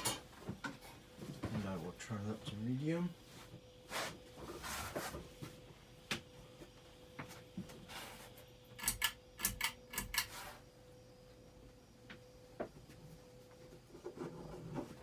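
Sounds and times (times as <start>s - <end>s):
ceiling fan humming: 0.0s - 15.0s.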